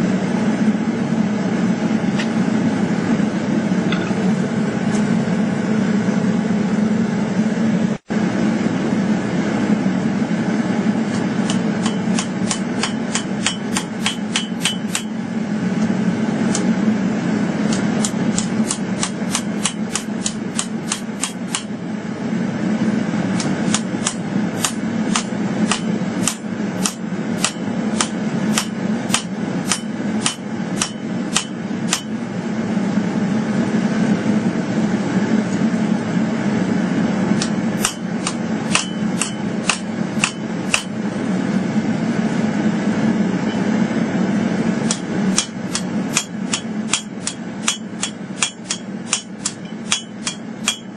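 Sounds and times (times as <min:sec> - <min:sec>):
hammer striking steel on anvil: 0:11.4 - 0:15.2, 0:17.7 - 0:21.7, 0:23.4 - 0:32.2, 0:37.4 - 0:41.0, 0:44.8 - 0:50.9.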